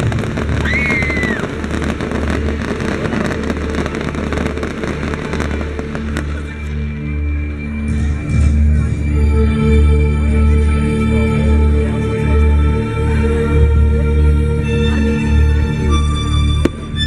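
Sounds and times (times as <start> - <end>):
fireworks crackling and popping: 0.0 - 8.9
low rumble: 0.0 - 17.0
high whistle: 0.6 - 1.5.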